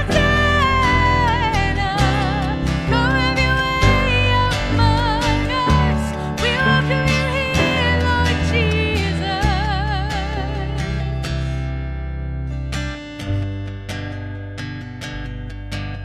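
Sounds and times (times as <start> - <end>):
strong bass: 0.0 - 16.0.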